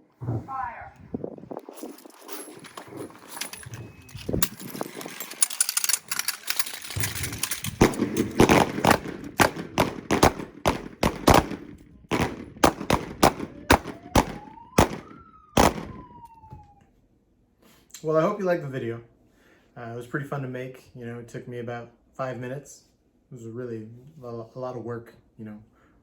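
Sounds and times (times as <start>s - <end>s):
volley of handgun shots: 7.2s - 16.2s.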